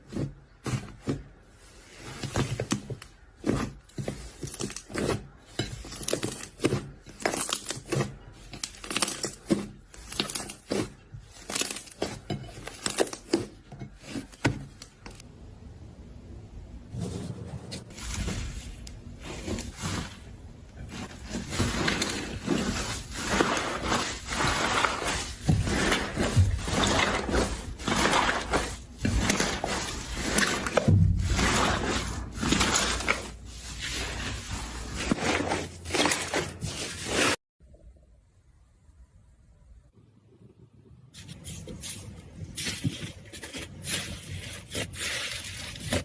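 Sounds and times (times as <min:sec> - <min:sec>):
slime squelching by hand: 0:00.0 - 0:15.3, 0:17.9 - 0:37.4.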